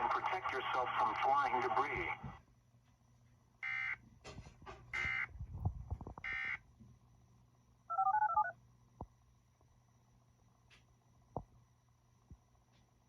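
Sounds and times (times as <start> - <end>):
buzzy data tone chirp: 6.2 - 6.6, 7.8 - 8.6
telephone touch-tone beeps: 7.9 - 8.6.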